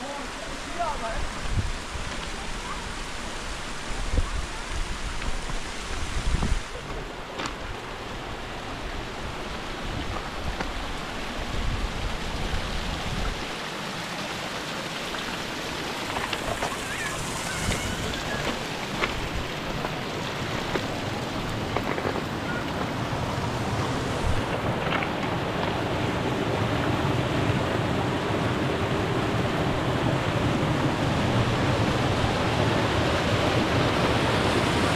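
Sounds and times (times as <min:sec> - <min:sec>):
rushing water: 0:00.0 - 0:34.9
wind buffeting microphone: 0:03.7 - 0:07.1.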